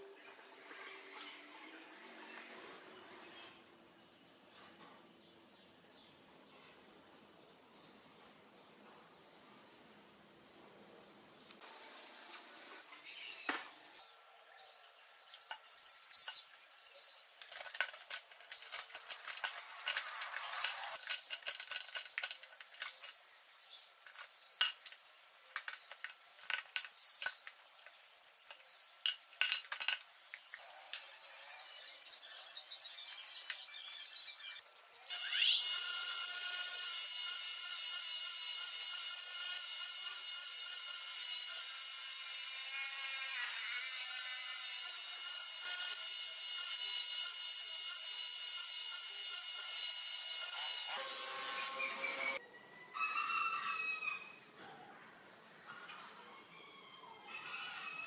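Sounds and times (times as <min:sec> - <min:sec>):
metal tools clinking and clicking: 0:17.4 - 0:23.2.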